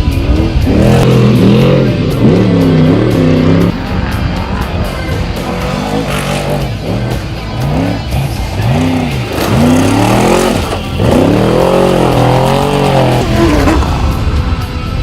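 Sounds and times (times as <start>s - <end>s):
race engine revving: 0.0s - 14.8s.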